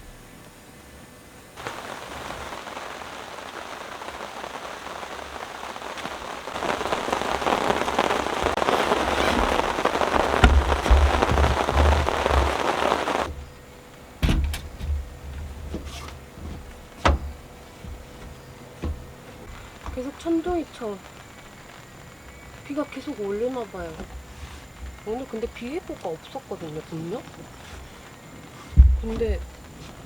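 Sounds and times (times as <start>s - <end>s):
heavy rain pouring: 1.4s - 30.0s
loud sharp thumps: 6.5s - 22.6s, 27.1s - 30.0s.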